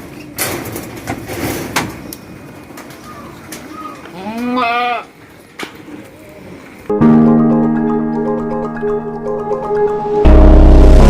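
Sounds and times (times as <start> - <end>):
goat bleating: 4.1 - 5.2.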